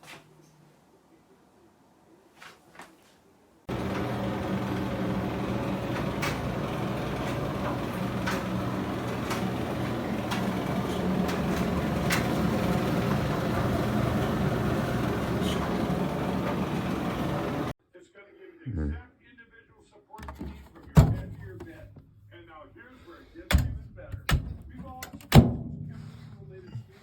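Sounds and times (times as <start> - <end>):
clothes dryer motor hum: 3.7 - 17.8.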